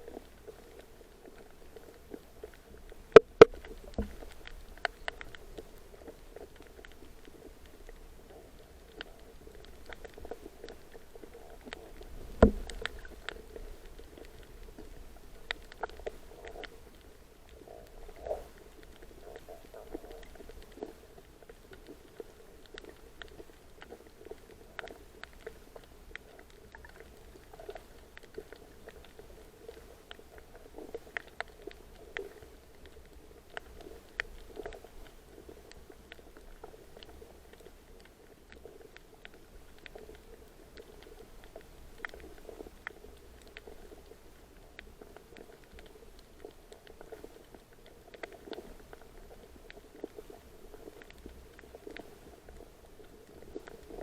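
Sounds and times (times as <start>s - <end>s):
fish pops and clicks underwater: 0.0s - 54.0s
low underwater rumble: 0.0s - 54.0s.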